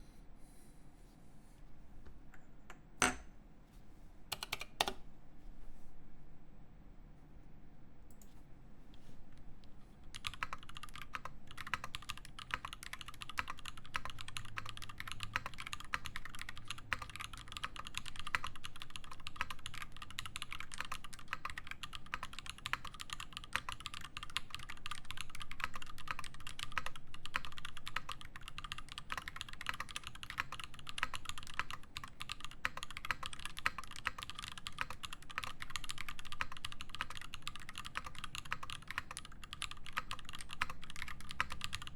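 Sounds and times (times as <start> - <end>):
mechanical keyboard typing: 4.3 - 5.0, 10.1 - 41.9.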